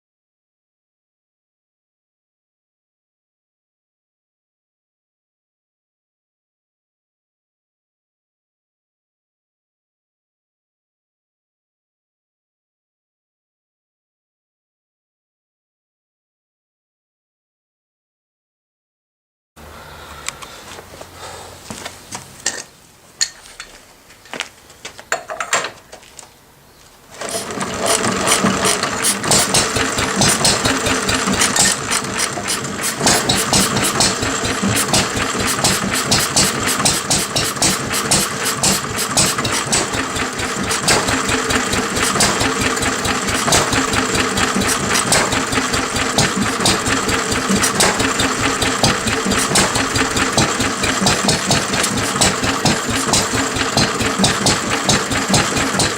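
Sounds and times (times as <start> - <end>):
stationary engine running: 27.1 - 55.9
clicks and knocks: 27.2 - 55.9.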